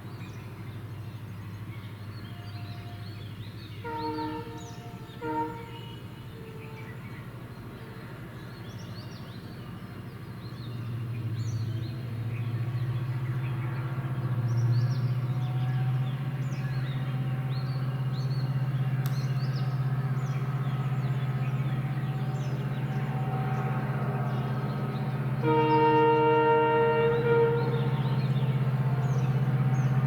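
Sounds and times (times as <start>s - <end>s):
diesel locomotive engine running: 0.0s - 30.0s
birds chirping: 10.2s - 30.0s.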